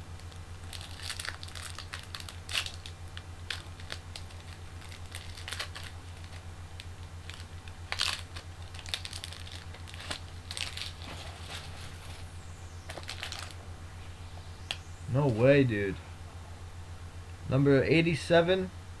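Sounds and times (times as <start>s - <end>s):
low electrical hum: 0.0s - 19.0s
packaging crinkling and tearing: 0.1s - 13.6s.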